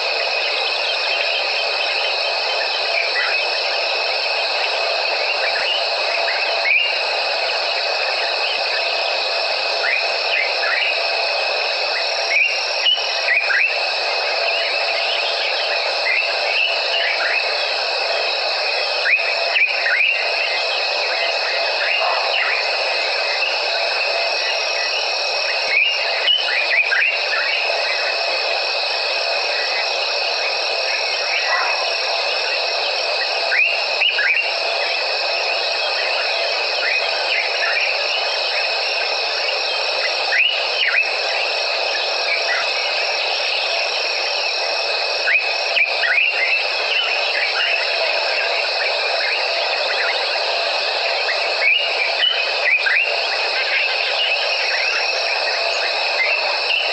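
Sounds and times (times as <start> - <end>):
crickets and insects droning: 0.0 - 56.9
upward sweeping calls: 21.8 - 22.7, 31.2 - 32.1.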